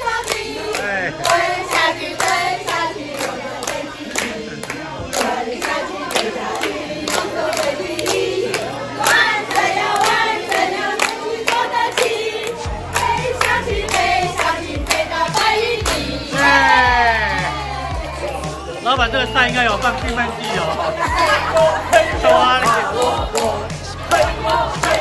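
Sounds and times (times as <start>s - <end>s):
hands clapping in steady beat: 0.0s - 16.6s, 21.9s - 25.0s
group of people singing: 0.0s - 25.0s.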